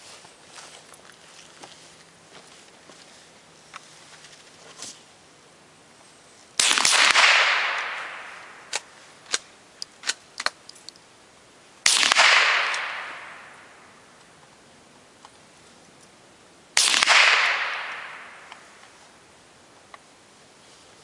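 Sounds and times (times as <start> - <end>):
rifle shots echoing: 6.6 - 9.5, 11.8 - 14.1, 16.8 - 18.9
small sharp cracks: 6.6 - 11.0, 11.9 - 14.3.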